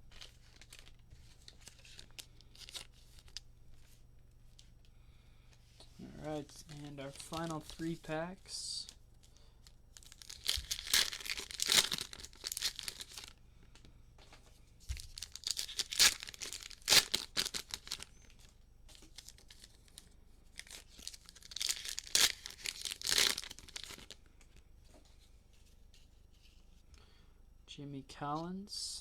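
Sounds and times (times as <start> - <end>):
plastic wrapper tearing: 0.1 - 3.4, 7.0 - 8.0, 8.8 - 13.4, 15.0 - 24.2.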